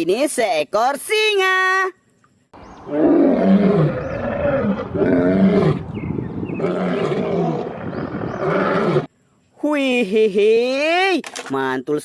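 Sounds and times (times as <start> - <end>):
lion roaring and growling: 2.6 - 9.1.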